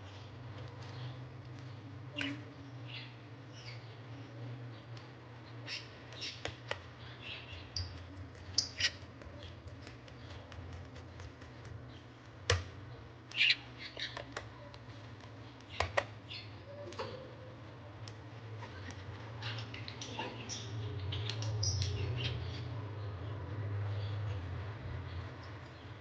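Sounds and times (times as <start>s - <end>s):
steady low hum: 0.0s - 26.0s
laptop parts clicking and tapping: 12.4s - 12.7s, 15.2s - 16.1s.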